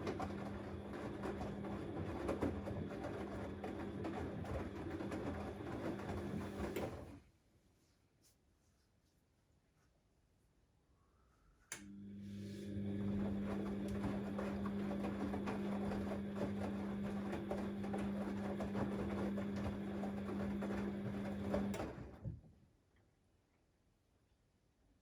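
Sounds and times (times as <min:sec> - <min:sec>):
washing machine drum humming: 0:00.0 - 0:07.1, 0:12.0 - 0:22.3
wet laundry churning: 0:00.0 - 0:07.2, 0:12.6 - 0:22.3.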